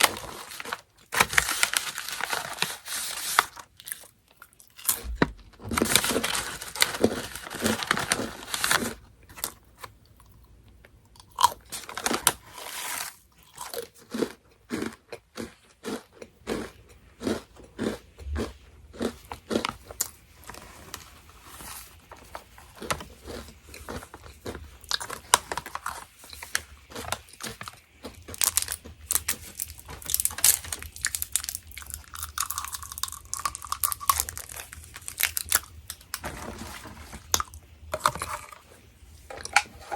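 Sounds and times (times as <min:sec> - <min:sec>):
crunchy snack being chewed: 0:11.1 - 0:20.2, 0:22.6 - 0:36.2.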